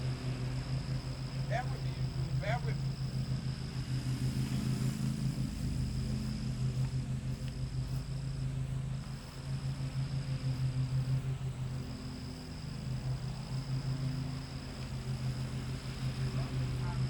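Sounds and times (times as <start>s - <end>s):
lawn mower engines running: 0.0s - 17.0s.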